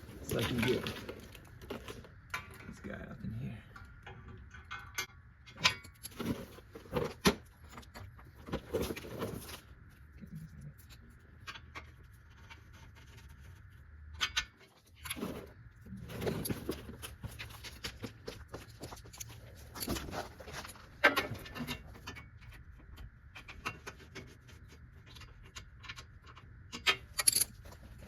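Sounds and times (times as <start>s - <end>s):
socket wrench metallic clicks and clanks: 26.8s - 27.6s.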